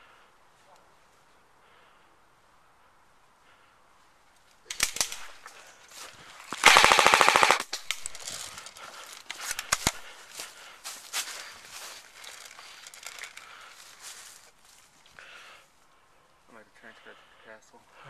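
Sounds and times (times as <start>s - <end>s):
airsoft rifle firing: 4.7s - 5.4s, 6.5s - 8.1s.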